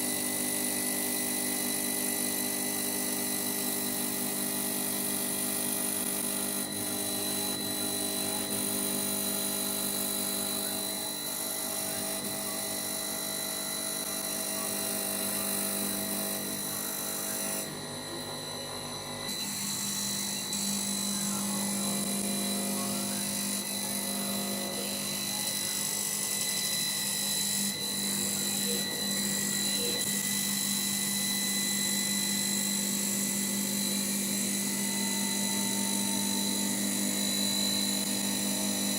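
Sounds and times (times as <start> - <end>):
lathe machine whine: 0.0 - 38.9.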